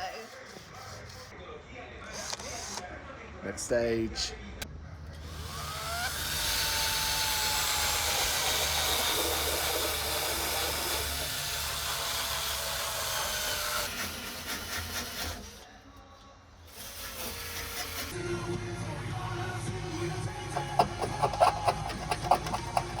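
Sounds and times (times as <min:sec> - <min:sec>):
power tool sanding steel: 0:05.2 - 0:15.6, 0:16.7 - 0:18.2, 0:20.6 - 0:23.0.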